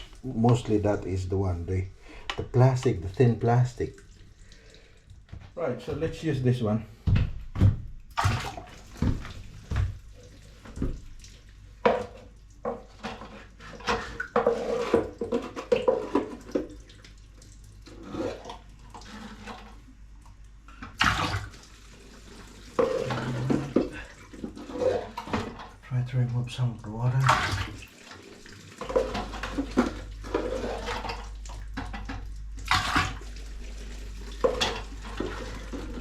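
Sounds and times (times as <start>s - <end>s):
water splashing and pouring: 0.0s - 1.8s, 8.1s - 20.0s, 20.8s - 25.8s, 26.6s - 36.0s.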